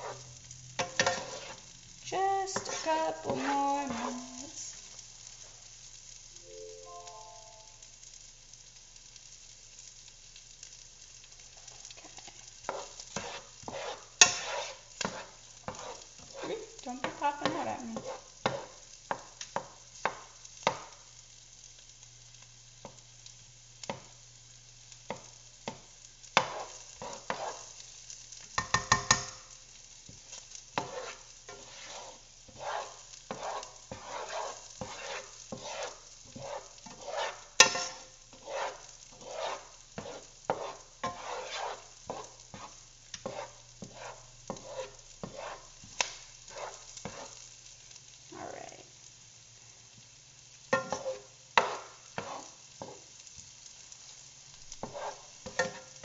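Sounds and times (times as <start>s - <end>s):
spoon scraping a pan: 0.0s - 4.8s, 11.5s - 21.0s, 25.1s - 47.6s, 50.7s - 53.4s, 54.6s - 56.0s
onions sauteing in butter: 0.0s - 56.0s
hot fat popping: 28.4s - 31.8s, 32.4s - 44.6s, 45.8s - 47.2s.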